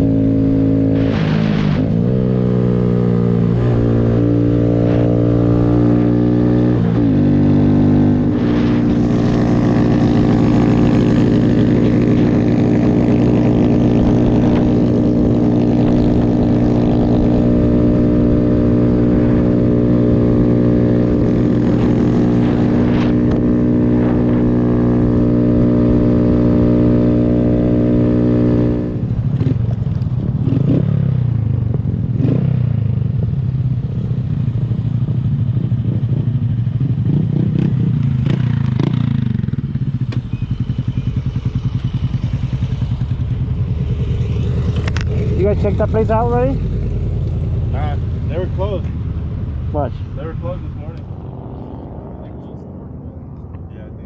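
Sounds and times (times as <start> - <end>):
small motorcycle engine running: 34.6 - 53.6.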